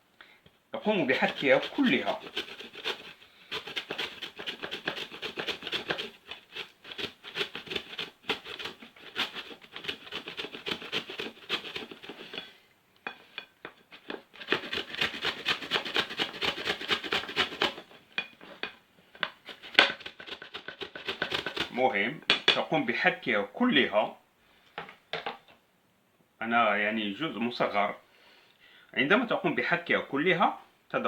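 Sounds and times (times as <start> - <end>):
turnip grated on hand grater: 0.8 - 21.9.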